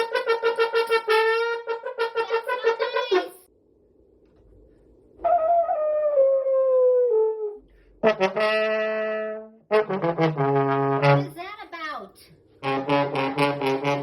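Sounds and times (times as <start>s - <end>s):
brass horn blowing notes: 0.0s - 3.4s, 8.0s - 11.3s, 12.6s - 14.0s.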